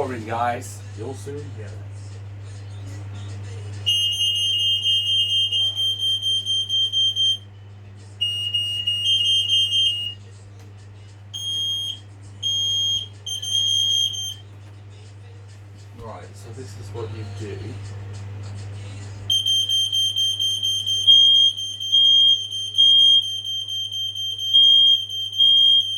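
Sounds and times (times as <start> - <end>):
smoke alarm shrill beeping: 3.9 - 7.4, 8.2 - 10.2, 11.4 - 14.4, 19.3 - 25.9.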